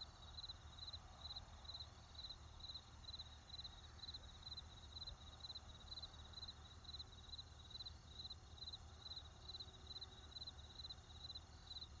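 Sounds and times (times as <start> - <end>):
crickets chirping: 0.0 - 12.0.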